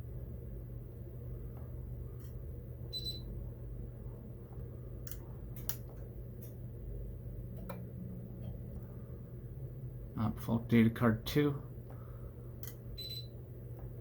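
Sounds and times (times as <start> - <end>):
steady low hum: 0.0 - 14.0
high electronic beep: 2.9 - 3.3, 13.0 - 13.3.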